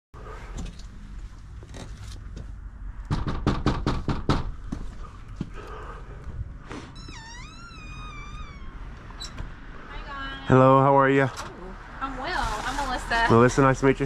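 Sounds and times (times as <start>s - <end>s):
sharp knocks on a door: 3.1s - 4.6s
footsteps: 4.6s - 7.2s.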